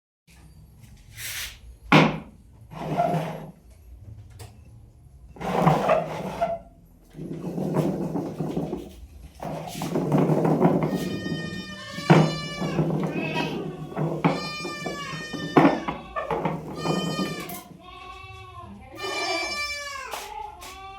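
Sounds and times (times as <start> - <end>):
wooden roller rumbling and creaking: 2.1 - 3.7, 5.3 - 18.0.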